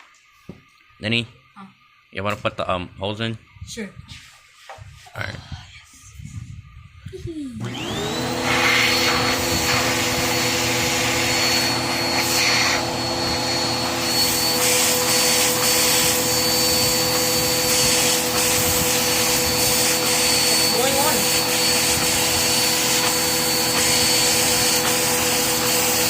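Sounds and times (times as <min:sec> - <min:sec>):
vacuum cleaner motor whining: 0:07.6 - 0:26.0.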